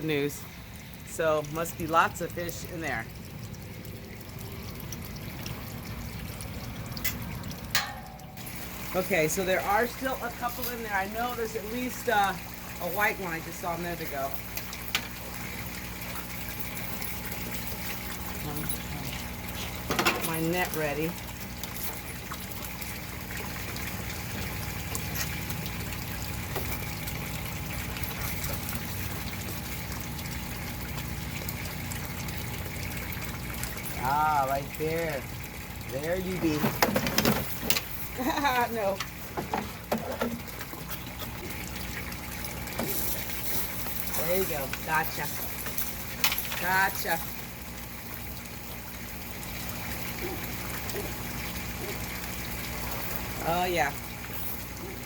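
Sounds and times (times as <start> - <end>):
constant low hum: 0.0 - 55.0
water trickling and sloshing: 0.0 - 55.0
water splash: 4.1 - 10.8.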